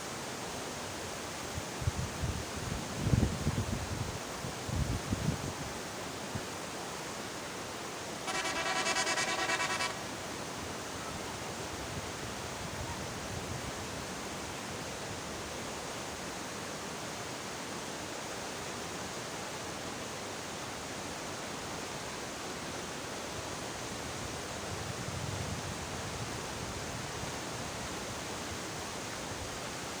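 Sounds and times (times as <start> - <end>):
river water rushing: 5.8 - 11.8.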